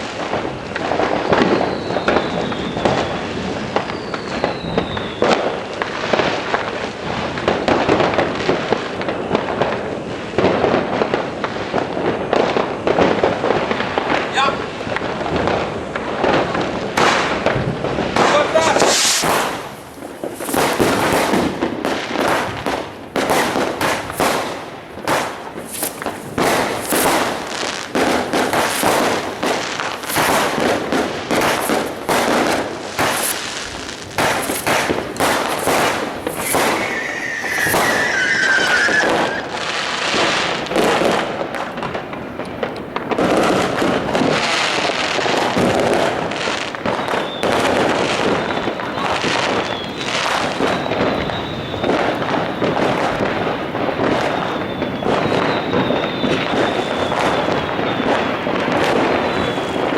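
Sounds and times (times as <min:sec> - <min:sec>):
fireworks bangs and crackling: 0:00.0 - 0:59.9
wavering firework whistle: 0:01.1 - 0:05.9, 0:18.5 - 0:41.3, 0:43.2 - 0:59.9.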